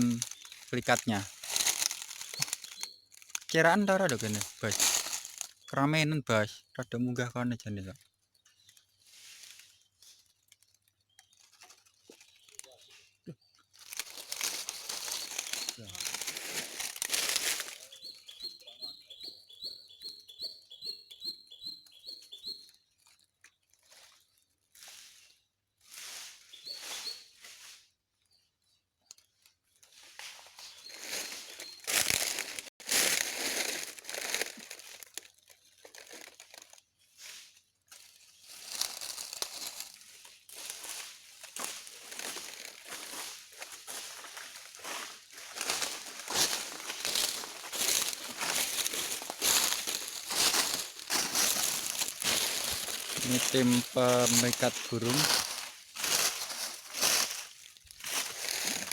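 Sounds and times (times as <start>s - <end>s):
bird chirping: 0.0s - 1.2s, 1.9s - 4.8s, 14.6s - 16.2s, 17.6s - 23.6s, 26.5s - 27.3s
rustling and crunching: 0.0s - 5.7s, 8.0s - 12.9s, 13.7s - 18.2s, 29.8s - 58.9s.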